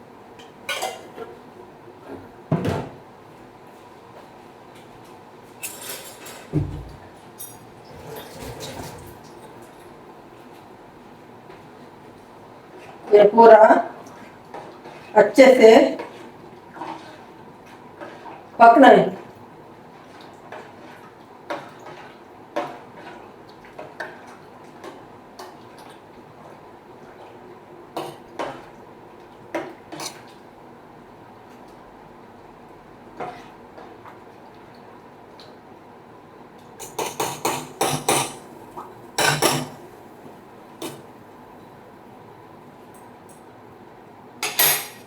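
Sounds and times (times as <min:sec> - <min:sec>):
spoon clinking against pot: 0:36.8 - 0:38.4, 0:39.2 - 0:39.8
metal spoon clinking against pot: 0:39.2 - 0:39.8, 0:44.4 - 0:45.0.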